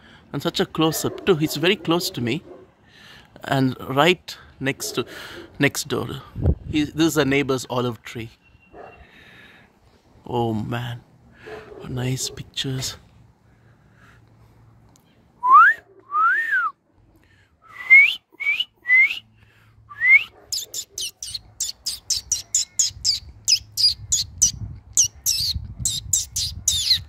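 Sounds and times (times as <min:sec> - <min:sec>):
parrot whistling calls: 0:20.0 - 0:27.0
parrot fast high chirps: 0:20.5 - 0:27.0.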